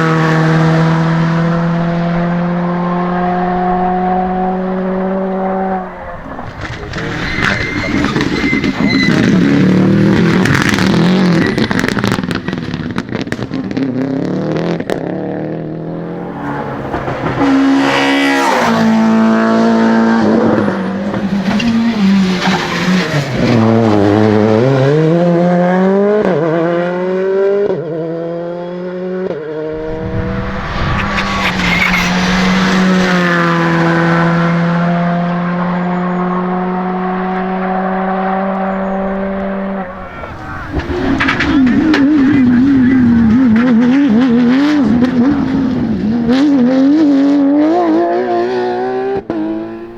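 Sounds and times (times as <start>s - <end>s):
car engines revving hard: 0.0s - 49.9s
tyre squeal: 5.3s - 12.4s, 16.0s - 23.7s, 30.2s - 33.9s.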